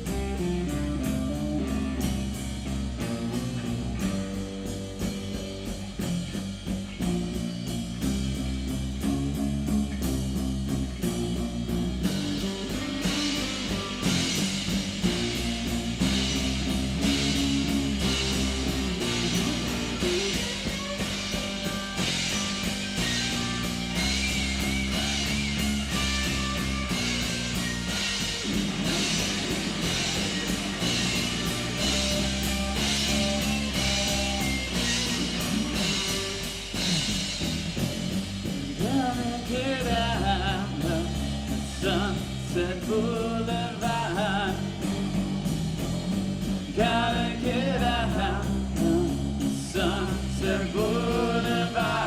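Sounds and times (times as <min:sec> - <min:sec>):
drum beat: 0:00.0 - 0:52.0
held bass notes: 0:00.0 - 0:52.0
wavering guitar lead: 0:00.0 - 0:52.0.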